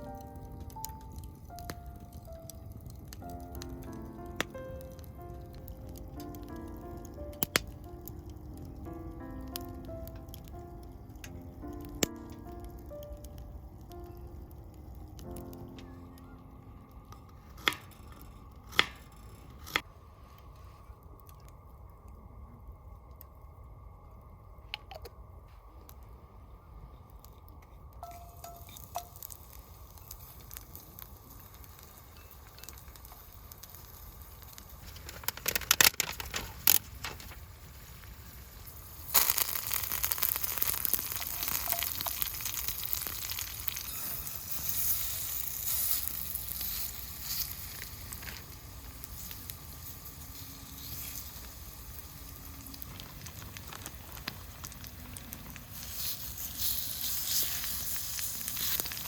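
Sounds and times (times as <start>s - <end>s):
food sizzling in a hot pan: 28.0s - 35.8s, 36.6s - 59.0s.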